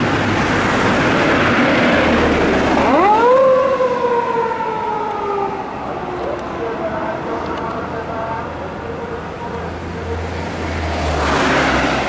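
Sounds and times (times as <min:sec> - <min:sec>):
passing vehicle rush: 0:00.0 - 0:12.0
police car siren wailing: 0:02.5 - 0:08.2.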